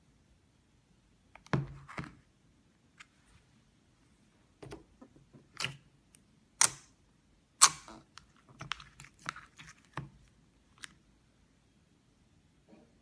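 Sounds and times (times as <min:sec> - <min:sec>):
slime sticky pops and clicks: 0:06.6 - 0:06.9.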